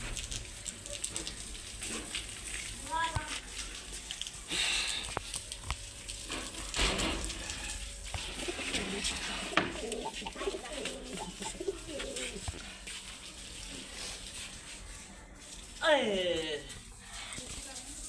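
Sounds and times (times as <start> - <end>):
splashing: 0.0 - 15.0
pigeon cooing: 7.2 - 12.6.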